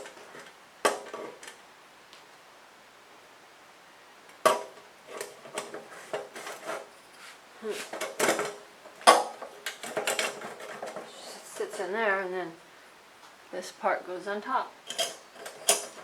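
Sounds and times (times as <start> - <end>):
metal heater parts knocking: 4.3 - 6.9, 7.8 - 12.0, 14.9 - 16.0.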